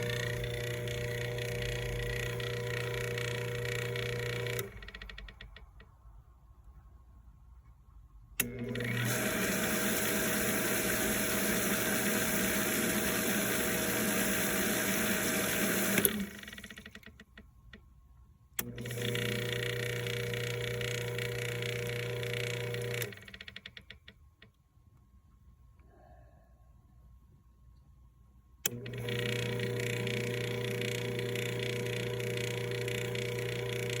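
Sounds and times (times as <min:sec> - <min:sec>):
pool pump motor running: 0:00.0 - 0:05.3, 0:08.4 - 0:17.3, 0:18.6 - 0:23.6, 0:28.6 - 0:34.0.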